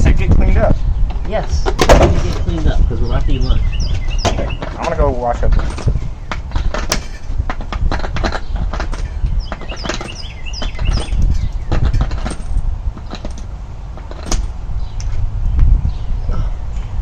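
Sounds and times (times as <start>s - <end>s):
steady low rumble: 0.0s - 17.0s
small birds chirping: 0.2s - 17.0s
scattered knocks: 1.1s - 2.7s, 3.8s - 14.6s.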